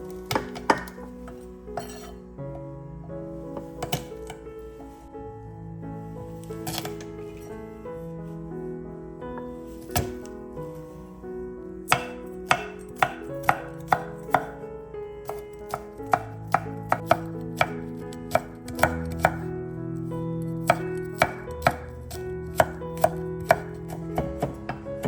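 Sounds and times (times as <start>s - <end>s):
soft background music: 0.0s - 25.0s
knife chopping on cutting board: 0.3s - 1.0s, 1.8s - 2.2s, 3.8s - 4.4s, 6.6s - 7.0s, 9.9s - 10.3s, 11.9s - 14.6s, 15.2s - 17.7s, 18.3s - 19.4s, 20.6s - 24.9s.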